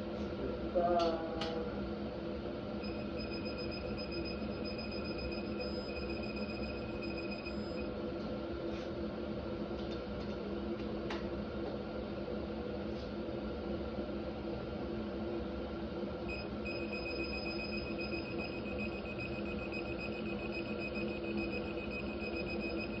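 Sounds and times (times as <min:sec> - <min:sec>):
workshop hum: 0:00.0 - 0:23.0
high electronic tone: 0:02.8 - 0:07.8.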